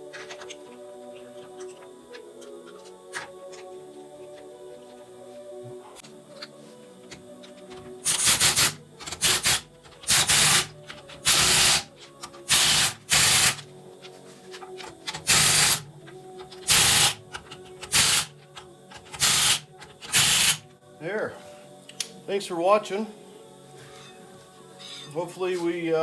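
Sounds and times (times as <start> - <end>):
impact wrench hammering: 12.5 - 13.6.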